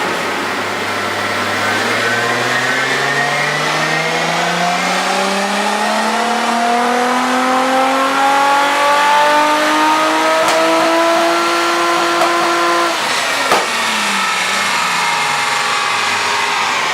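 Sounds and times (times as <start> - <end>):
car engine revving under load: 0.0 - 16.9
exhaust crack: 9.8 - 16.9.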